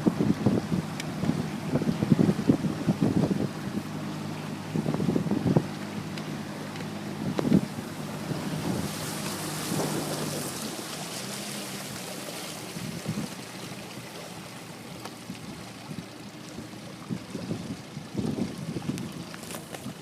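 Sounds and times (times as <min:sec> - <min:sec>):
boat motor running: 0:00.0 - 0:20.0
water rushing: 0:00.0 - 0:20.0
wind rushing: 0:07.2 - 0:10.9.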